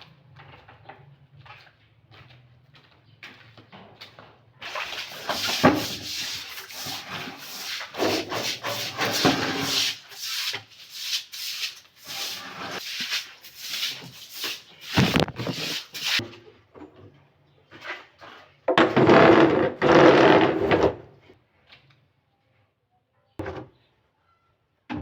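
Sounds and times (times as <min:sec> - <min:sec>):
clothes scrubbed by hand: 0:04.6 - 0:16.2.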